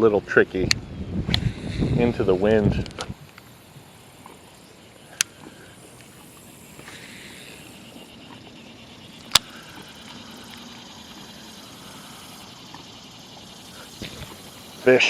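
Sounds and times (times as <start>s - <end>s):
wind noise on microphone: 0.0s - 3.5s, 14.0s - 14.5s.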